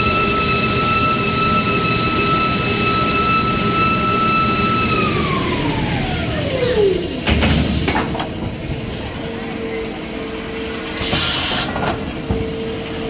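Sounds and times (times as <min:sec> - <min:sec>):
machine whine winding down: 0:00.0 - 0:07.4.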